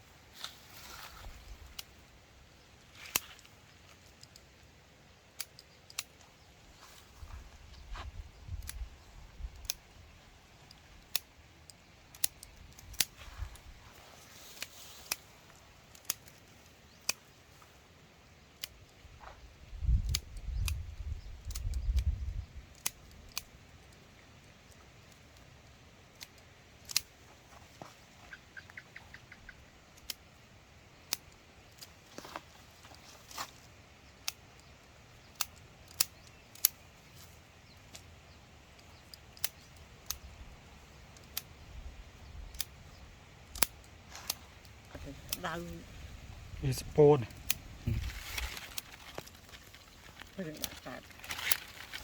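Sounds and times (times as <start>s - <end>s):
small ticks: 2.9s - 4.6s, 5.3s - 7.0s, 8.0s - 17.7s, 18.5s - 27.1s, 27.8s - 30.4s, 31.0s - 38.1s, 38.7s - 45.4s
scissors snipping: 10.5s - 17.3s
low rumbling handling noise: 45.0s - 52.0s.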